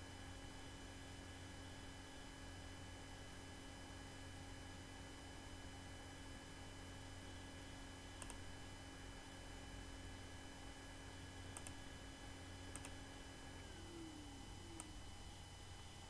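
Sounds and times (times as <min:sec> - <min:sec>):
low electrical hum: 0:00.0 - 0:16.0
faint computer mouse clicks: 0:08.2 - 0:08.4, 0:11.5 - 0:11.8, 0:12.7 - 0:13.0.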